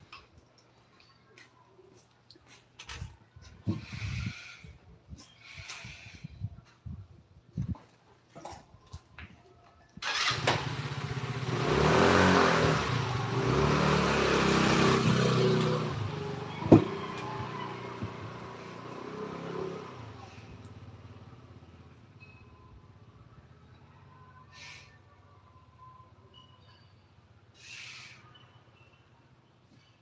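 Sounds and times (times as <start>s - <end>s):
engine revving: 10.0s - 20.6s.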